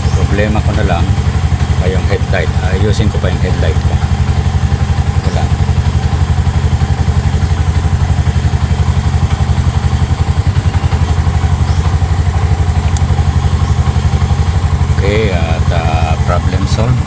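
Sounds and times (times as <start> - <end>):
auto-rickshaw engine idling: 0.0 - 17.0.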